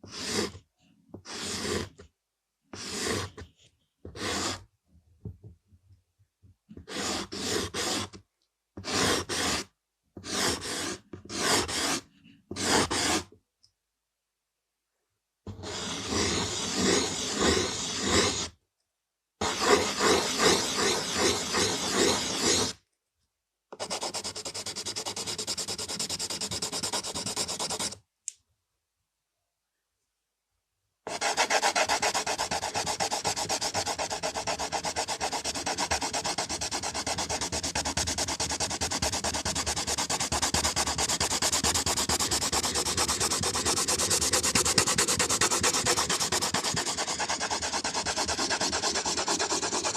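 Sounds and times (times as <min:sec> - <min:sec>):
pencil scratching on paper: 0:00.0 - 0:00.6, 0:01.2 - 0:02.1, 0:02.7 - 0:04.7, 0:06.7 - 0:08.2, 0:08.8 - 0:13.3, 0:15.5 - 0:18.6, 0:19.4 - 0:22.8, 0:23.8 - 0:28.0, 0:31.1 - 0:49.9.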